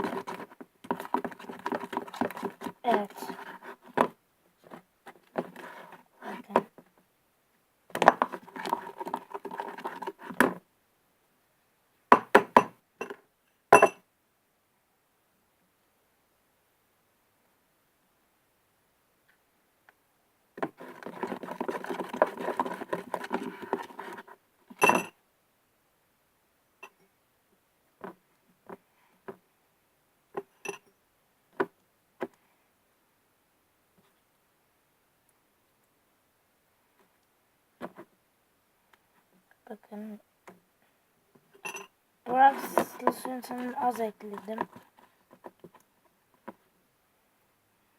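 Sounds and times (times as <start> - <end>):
slime squishing in a bowl: 0.0 - 3.9, 8.0 - 10.6, 20.6 - 24.3, 42.3 - 45.5
knocks and clinks on container: 42.5 - 43.7.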